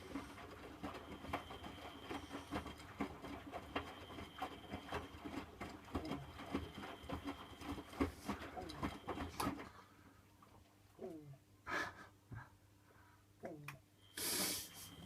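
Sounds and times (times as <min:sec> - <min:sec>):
washing machine drum tumbling: 0:00.0 - 0:09.7
faint whine and hum: 0:00.0 - 0:15.0.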